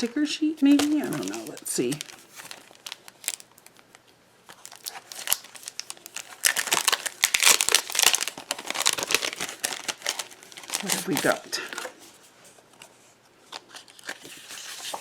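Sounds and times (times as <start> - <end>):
packaging crinkling: 0.6 - 12.2.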